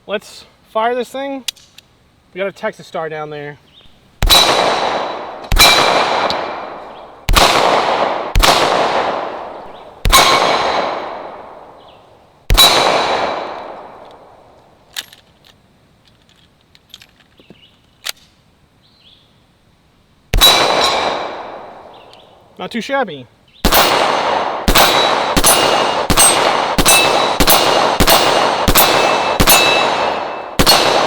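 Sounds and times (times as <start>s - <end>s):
pistol shots: 4.2s - 11.7s, 12.5s - 14.3s, 20.3s - 22.0s, 23.6s - 31.0s
steel target clanging: 24.7s - 31.0s.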